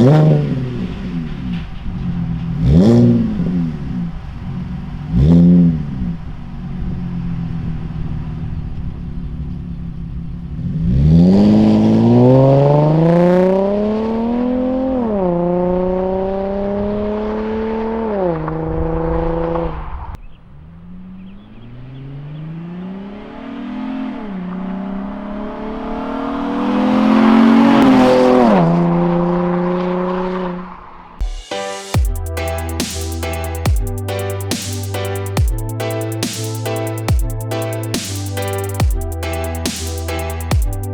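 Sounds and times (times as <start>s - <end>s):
car engine revving and accelerating: 0.0s - 19.9s, 20.8s - 30.9s.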